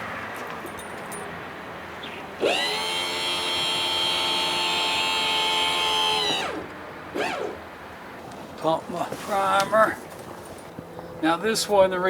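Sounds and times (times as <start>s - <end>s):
outboard starter motor whining: 2.4s - 7.6s.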